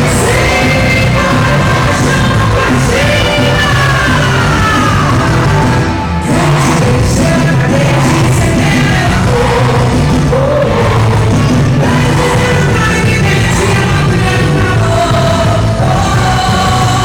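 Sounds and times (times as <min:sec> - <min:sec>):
loud music with singing: 0:00.0 - 0:17.0.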